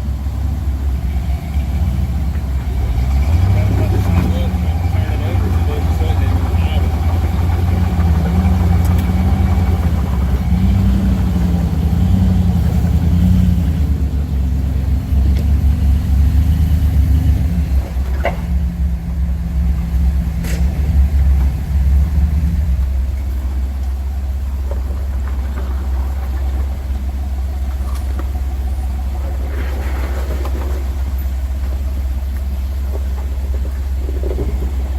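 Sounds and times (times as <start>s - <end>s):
vehicle engine running under load: 0.0s - 34.9s.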